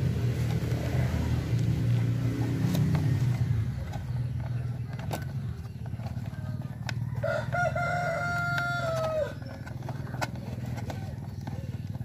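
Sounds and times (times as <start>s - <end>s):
rooster crowing: 6.8s - 9.6s.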